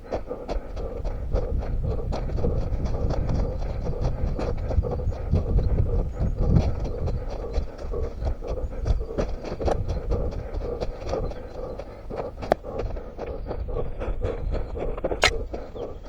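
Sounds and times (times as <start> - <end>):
running footsteps: 0.0 - 16.0.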